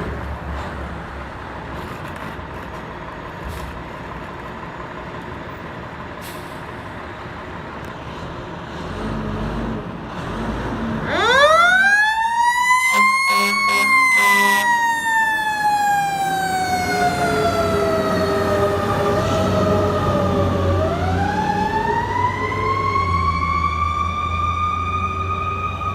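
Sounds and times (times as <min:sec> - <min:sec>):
road noise: 0:00.0 - 0:25.9
truck engine: 0:00.0 - 0:25.9
mechanical siren wailing: 0:11.0 - 0:25.9
air horn blasts: 0:12.9 - 0:14.8.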